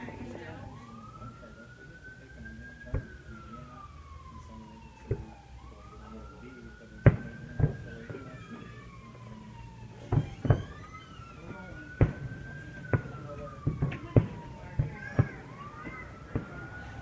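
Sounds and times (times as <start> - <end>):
emergency vehicle siren wailing: 0.0 - 17.0
fireworks bangs: 2.8 - 3.4, 5.0 - 5.4, 7.0 - 8.5, 9.2 - 17.0.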